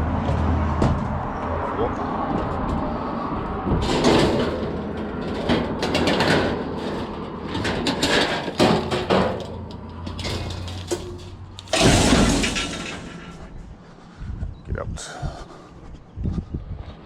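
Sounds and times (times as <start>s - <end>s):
scrap metal clanking: 3.7s - 13.7s.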